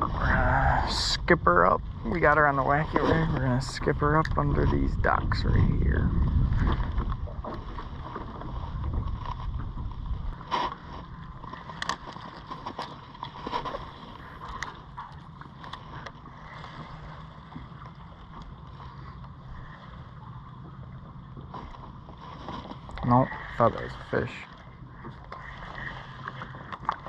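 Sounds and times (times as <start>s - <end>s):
low steady hum: 0.0s - 27.0s
fishing rod and reel clicks: 11.6s - 12.8s.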